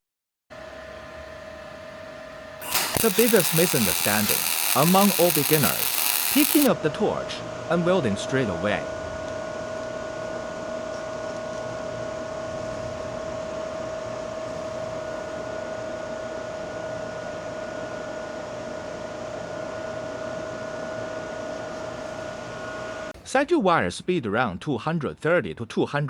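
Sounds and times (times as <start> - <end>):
machine whirring with high hum: 2.6 - 6.7.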